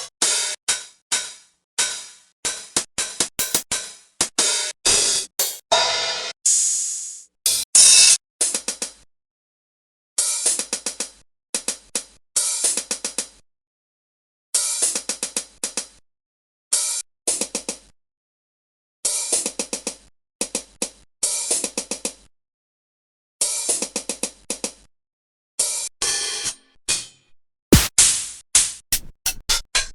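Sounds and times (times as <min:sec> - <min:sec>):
cymbals struck: 0:03.4 - 0:03.6, 0:05.4 - 0:05.6.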